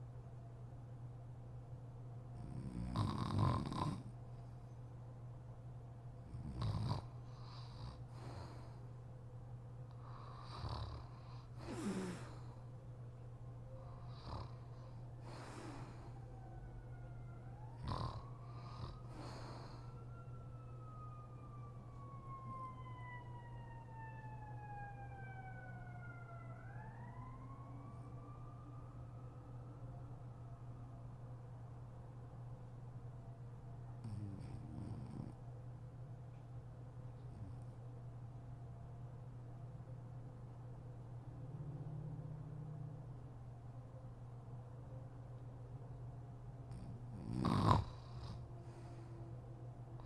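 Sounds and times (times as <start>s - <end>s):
steady low hum: 0.0s - 50.0s
woman snoring and snorting: 2.7s - 4.0s, 11.6s - 12.4s, 47.2s - 48.4s
distant siren wailing: 7.7s - 33.4s, 40.0s - 46.4s, 48.0s - 50.0s.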